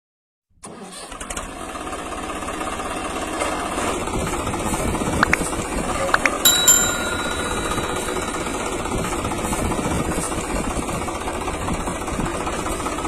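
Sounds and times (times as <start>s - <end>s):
engine chugging: 1.6s - 13.0s
steady high tone: 6.2s - 9.6s.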